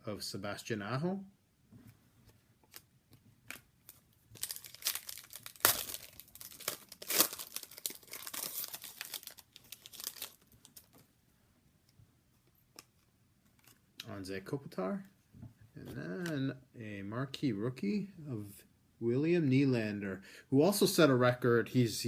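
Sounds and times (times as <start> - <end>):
card pack wrapper tearing and crinkling: 3.5 - 11.0.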